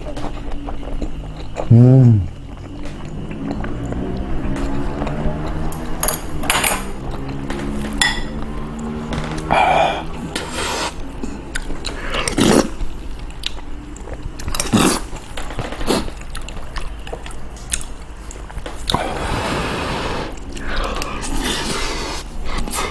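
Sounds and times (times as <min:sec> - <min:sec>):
chewing food: 0:00.0 - 0:19.3, 0:20.3 - 0:22.9
utensils clinking on dishes: 0:05.4 - 0:10.5.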